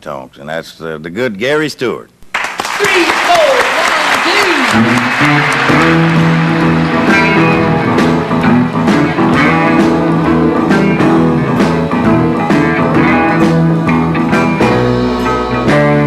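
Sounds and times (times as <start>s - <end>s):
steady drumbeat: 2.9s - 16.0s
country band instrumental: 3.3s - 16.0s
guitar lines: 4.4s - 16.0s.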